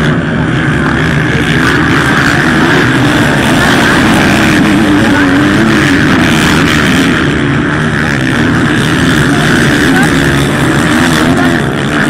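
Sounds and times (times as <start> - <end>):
motocross bikes revving: 0.0 - 12.0.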